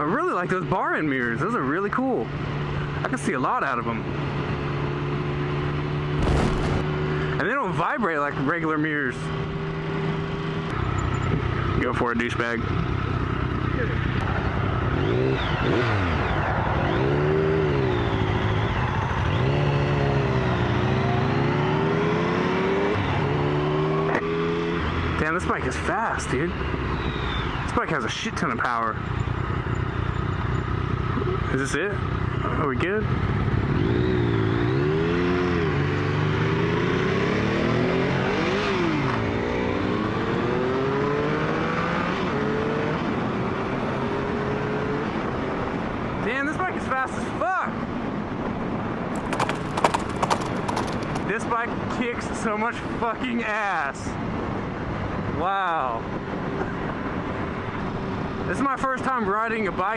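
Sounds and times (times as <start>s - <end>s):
motorcycle engine accelerating: 6.2s - 7.1s, 49.2s - 51.2s.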